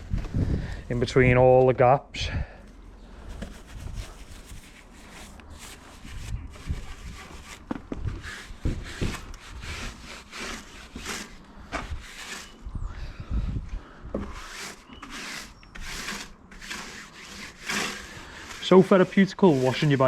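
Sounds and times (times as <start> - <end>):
brush scrubbing: 3.3 - 12.6, 14.2 - 20.0.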